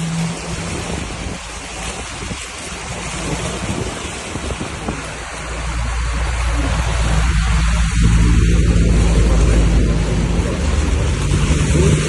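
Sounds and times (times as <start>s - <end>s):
heavy rain pouring: 0.0s - 12.0s
low rumble: 0.0s - 12.0s.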